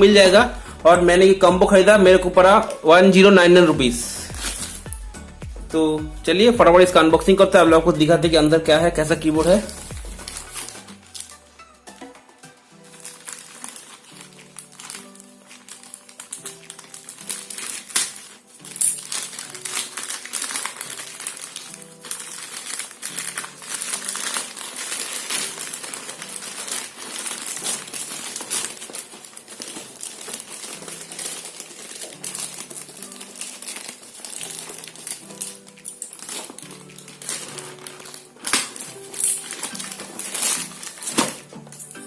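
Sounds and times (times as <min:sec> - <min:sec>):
background music: 0:00.0 - 0:42.0
packaging crinkling and tearing: 0:04.3 - 0:04.9, 0:09.3 - 0:11.5, 0:12.1 - 0:42.0.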